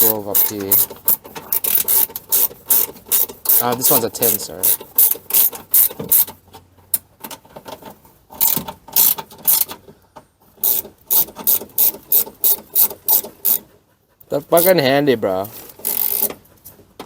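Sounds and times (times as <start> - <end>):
ratchet wrench clicking: 0.0 - 6.4, 8.4 - 9.8, 10.6 - 13.6, 15.8 - 16.3.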